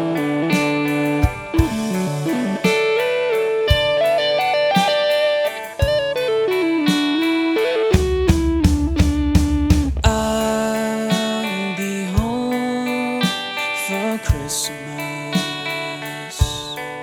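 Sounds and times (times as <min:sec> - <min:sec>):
bass guitar: 0:00.0 - 0:10.9
electric lead guitar melody: 0:00.0 - 0:17.0
drum hits: 0:00.5 - 0:05.0, 0:05.6 - 0:06.3, 0:08.0 - 0:11.5, 0:12.2 - 0:12.5.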